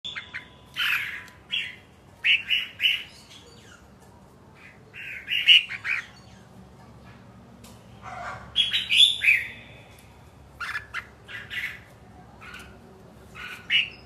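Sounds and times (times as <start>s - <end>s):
bird squawking: 0.0s - 3.8s, 4.6s - 6.2s, 8.0s - 9.6s, 10.6s - 14.0s.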